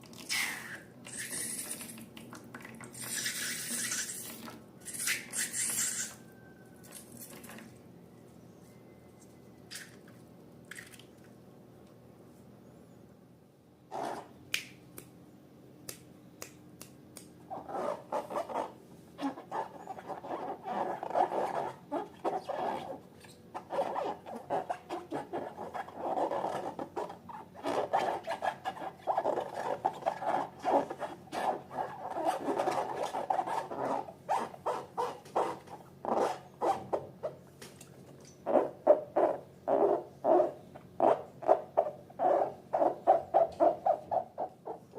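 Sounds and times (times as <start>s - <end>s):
rubbery rubs and squeaks: 0.0s - 7.6s, 13.9s - 14.4s, 17.5s - 37.4s, 38.2s - 44.9s.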